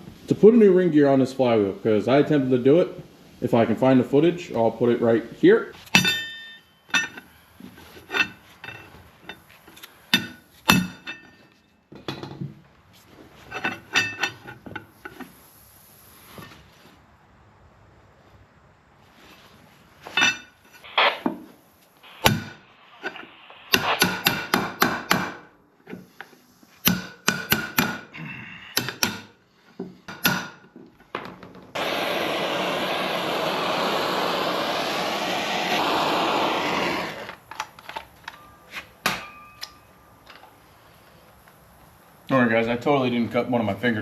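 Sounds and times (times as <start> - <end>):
tools knocking and tapping: 5.9 - 7.3, 26.8 - 28.0, 28.8 - 31.6
steady rushing hiss: 14.8 - 17.0, 18.2 - 25.4, 31.8 - 38.2.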